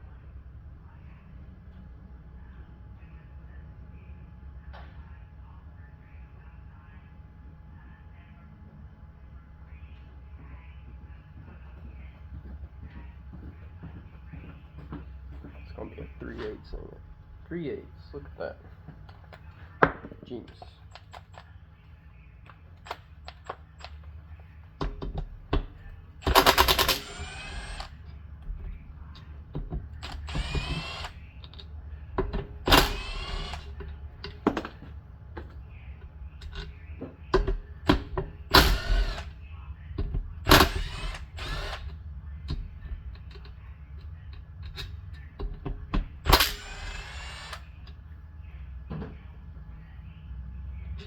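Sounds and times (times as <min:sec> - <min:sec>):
socket ratchet clicking: 0:26.2 - 0:28.0.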